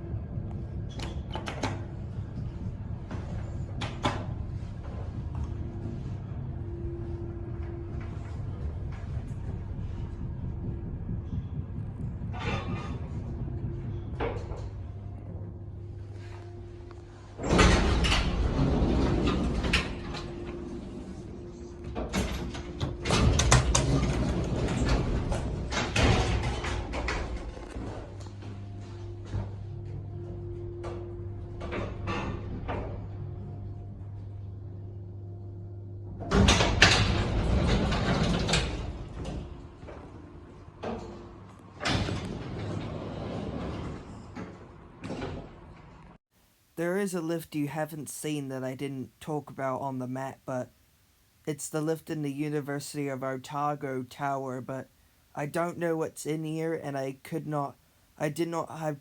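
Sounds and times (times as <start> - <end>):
low hum: 0.0 - 46.2
lift doors sliding open: 16.0 - 34.3, 36.1 - 46.2
knocks and clatter: 17.4 - 30.0.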